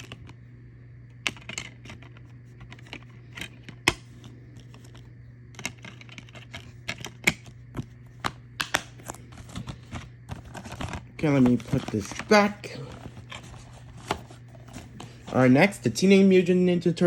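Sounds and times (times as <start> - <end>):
plastic cases clicking: 5.6 - 15.4.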